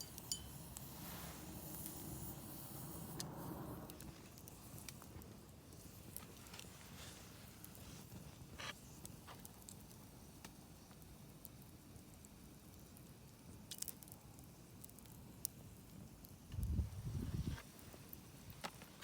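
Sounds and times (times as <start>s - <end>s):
campfire crackling and popping: 3.2s - 16.8s.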